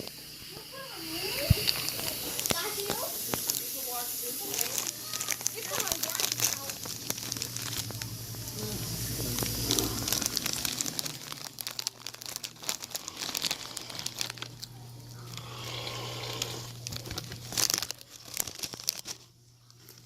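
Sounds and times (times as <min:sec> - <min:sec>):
snack bag crinkling: 0:01.2 - 0:20.0
low steady hum: 0:04.8 - 0:20.0.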